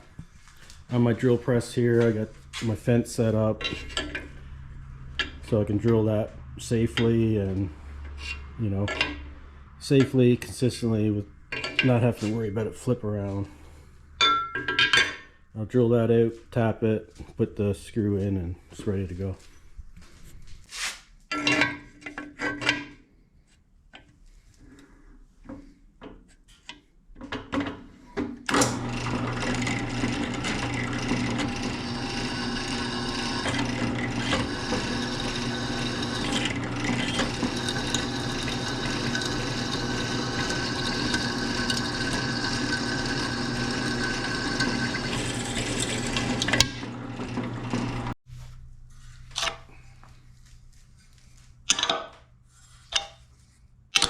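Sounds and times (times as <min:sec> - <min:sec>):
drill press humming: 0:28.5 - 0:48.2.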